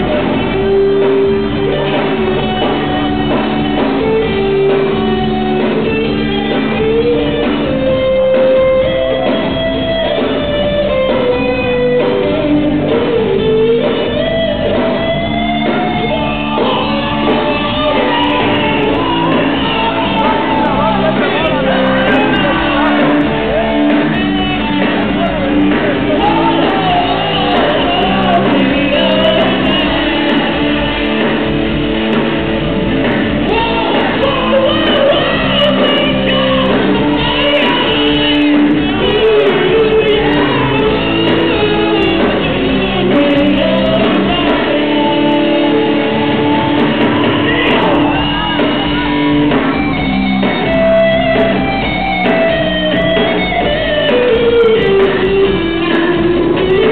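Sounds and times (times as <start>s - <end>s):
rock band playing: 0.0s - 56.9s
vocalist singing and shouting: 15.6s - 31.6s, 33.3s - 51.2s.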